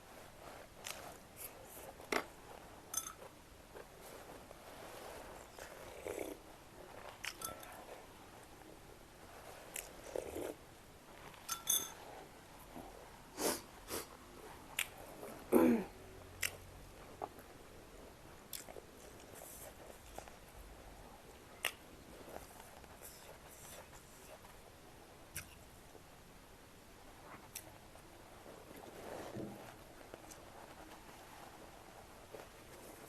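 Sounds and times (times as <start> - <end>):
chewing and lip smacks: 14.7 - 15.0, 16.4 - 16.6, 18.5 - 20.3, 21.6 - 21.8.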